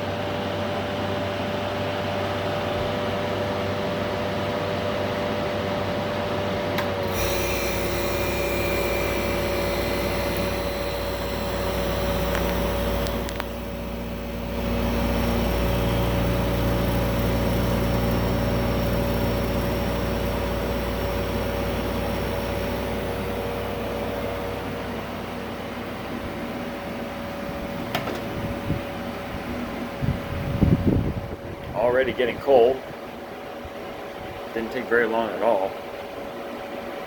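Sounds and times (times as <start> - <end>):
air conditioner fan running: 0.0 - 37.0
compressor low hum: 6.5 - 36.6.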